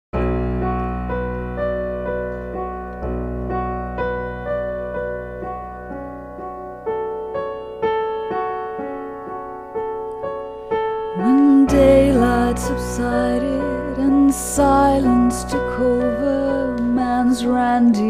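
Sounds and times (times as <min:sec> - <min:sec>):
slow piano music: 0:00.2 - 0:18.0.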